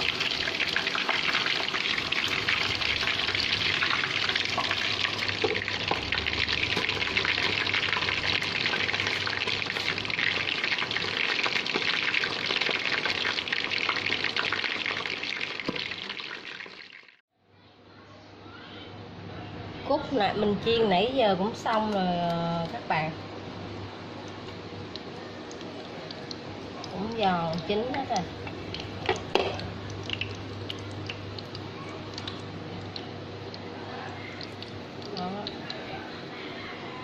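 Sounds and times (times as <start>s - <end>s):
deep-frying sizzle in oil: 0.0s - 17.2s, 24.2s - 36.0s.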